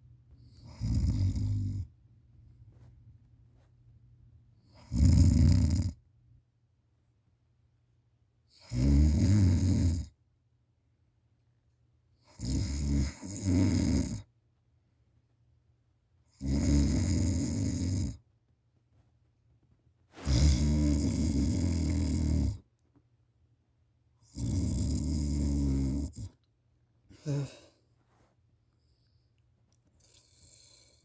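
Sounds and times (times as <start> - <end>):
person snoring: 0.7 - 1.8, 20.2 - 22.6, 24.3 - 26.3, 27.1 - 27.7.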